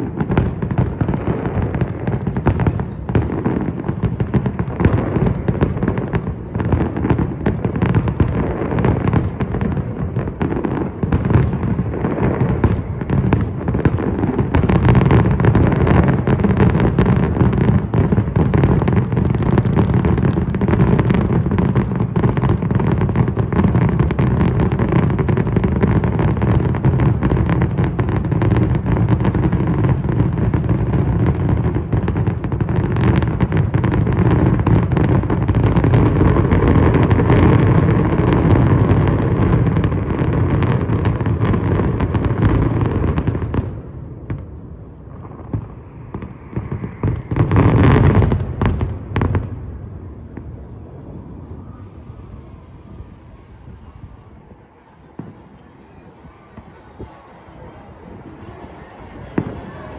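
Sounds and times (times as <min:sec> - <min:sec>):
fireworks bangs and crackling: 0:00.0 - 0:59.9.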